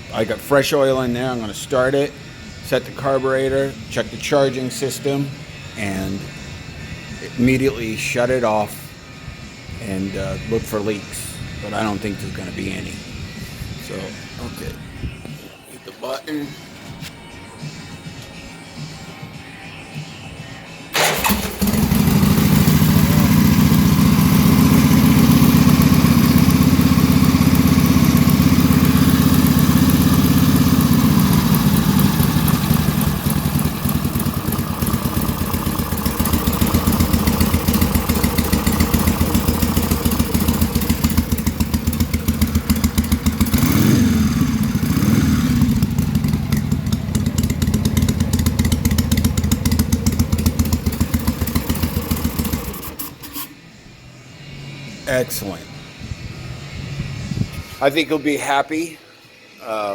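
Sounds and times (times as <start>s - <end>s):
motorcycle engine starting and idling: 20.9s - 53.6s
motorcycle engine revving: 21.0s - 53.5s.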